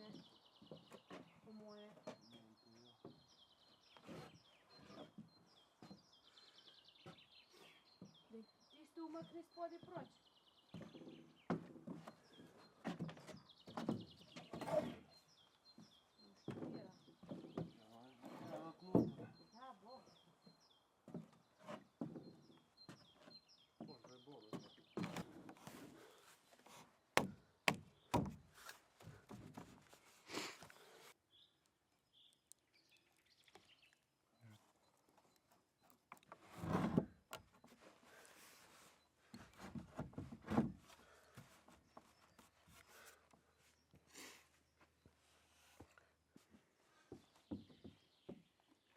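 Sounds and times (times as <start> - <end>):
small birds chirping: 0.0 - 48.9
sharp knocks from building work: 27.2 - 28.4.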